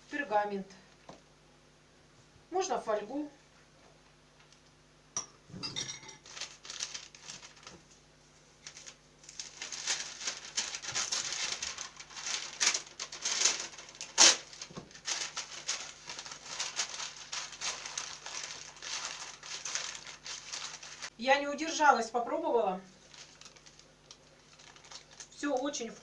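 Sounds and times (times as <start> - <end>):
paper rustling and crinkling: 6.2 - 21.1, 23.0 - 25.9.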